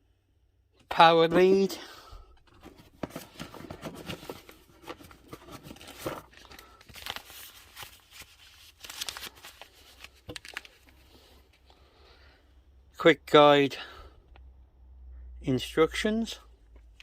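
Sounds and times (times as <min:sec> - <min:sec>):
packaging rustling and crinkling: 0:02.4 - 0:11.6.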